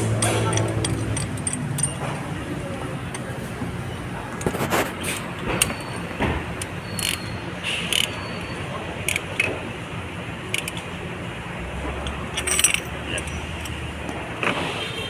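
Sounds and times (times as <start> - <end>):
sharp metallic clicks and clinks: 0.0 - 2.2, 5.6 - 9.6, 10.5 - 10.9, 12.0 - 13.9
steady low hum: 0.0 - 4.0.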